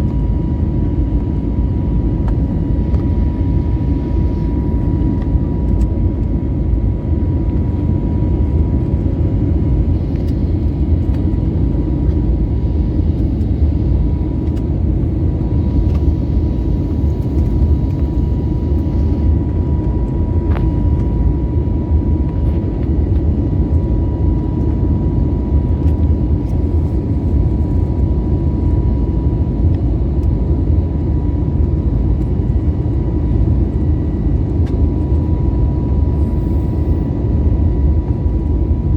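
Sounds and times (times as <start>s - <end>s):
airliner cabin engine rumble: 0.0s - 38.9s
faint high whine: 36.0s - 37.4s.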